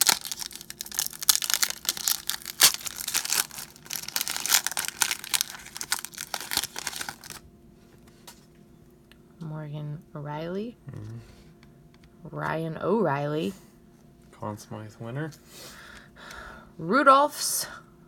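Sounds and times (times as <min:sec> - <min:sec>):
foil wrapper crinkling and tearing: 0:00.0 - 0:07.4.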